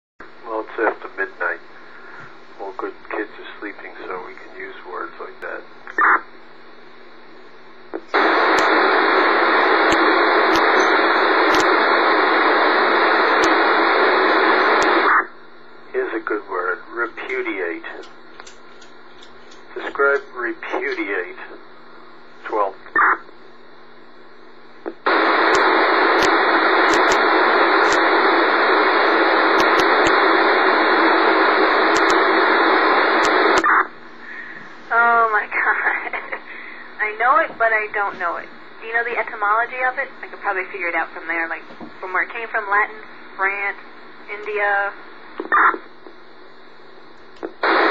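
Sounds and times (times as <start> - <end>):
radio static: 0.2 - 6.4, 7.8 - 18.4, 19.6 - 23.8, 24.8 - 46.7, 47.3 - 47.9
sharp static clicks: 7.8 - 47.9
sharp clicks: 18.0 - 20.3, 26.2 - 27.2, 29.6 - 30.2, 31.9 - 32.2.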